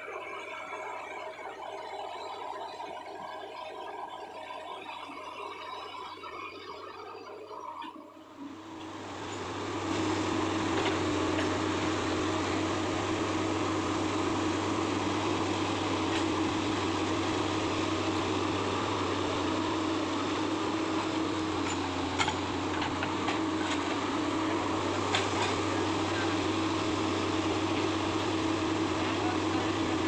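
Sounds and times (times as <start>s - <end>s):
diesel engine running: 8.4s - 30.0s.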